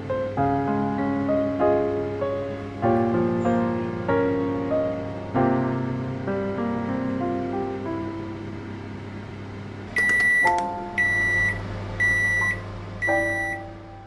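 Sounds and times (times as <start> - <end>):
microwave oven humming: 0.0 - 14.0
loud high beeps: 10.0 - 13.6.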